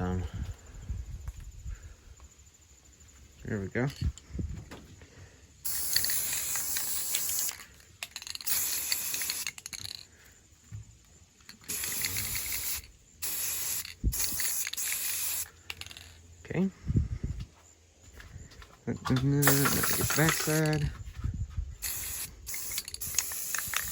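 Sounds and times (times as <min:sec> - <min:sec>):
spray paint can hissing: 0:05.6 - 0:10.0, 0:11.5 - 0:16.1, 0:19.4 - 0:20.8, 0:21.8 - 0:23.9.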